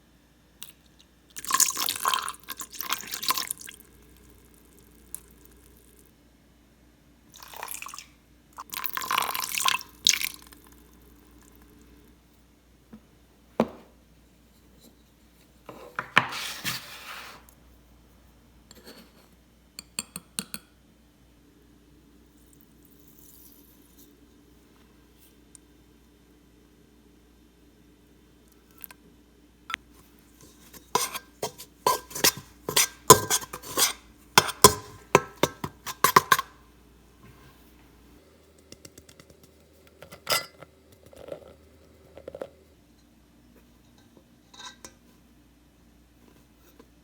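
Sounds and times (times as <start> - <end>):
liquid pouring into a bowl: 0.6 - 6.0, 7.3 - 11.8.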